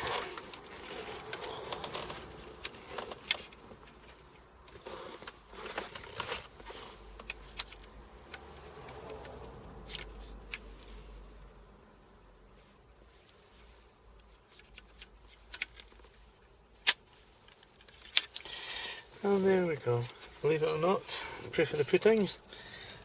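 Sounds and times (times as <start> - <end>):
plastic parts scraping: 0.0 - 10.8
plastic parts clicking: 14.5 - 16.1, 16.8 - 18.5.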